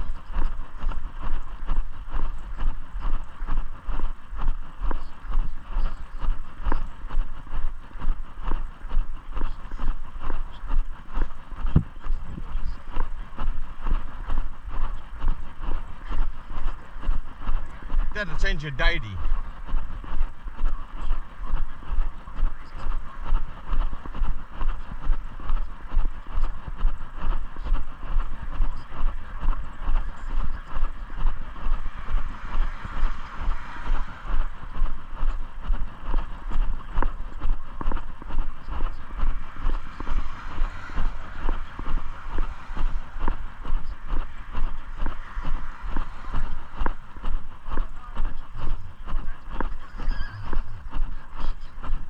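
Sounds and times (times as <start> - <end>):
low microphone rumble: 0.0 - 52.0
footsteps walking: 30.8 - 52.0.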